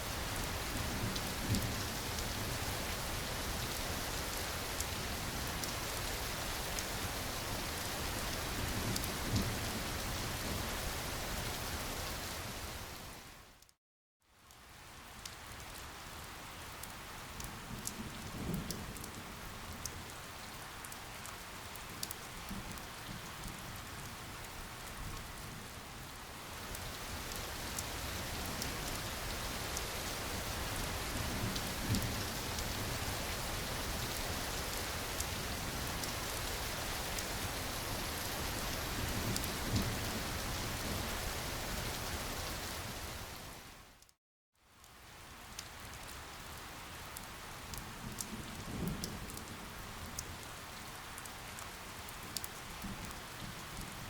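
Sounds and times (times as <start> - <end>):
steady rain with drops ticking: 0.0 - 54.0.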